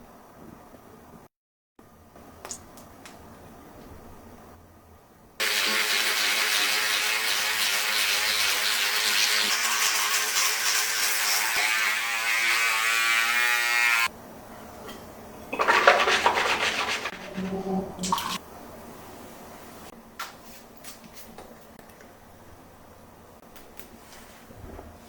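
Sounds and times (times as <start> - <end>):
tap water running: 5.4 - 11.7, 15.5 - 18.4.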